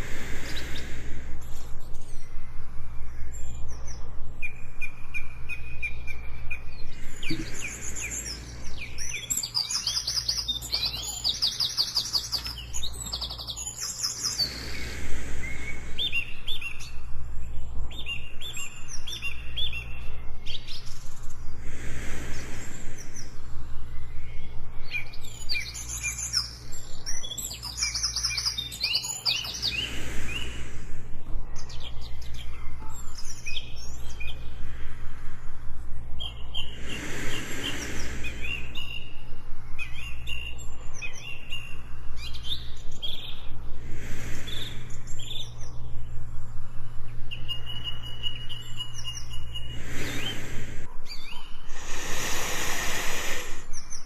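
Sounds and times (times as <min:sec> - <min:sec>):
slow breathing: 0:00.0 - 0:03.0, 0:06.6 - 0:09.5, 0:13.9 - 0:17.9, 0:19.9 - 0:25.8, 0:28.6 - 0:41.0, 0:41.6 - 0:54.0
birds chirping and trilling: 0:00.0 - 0:54.0
steady low rumble: 0:00.0 - 0:54.0.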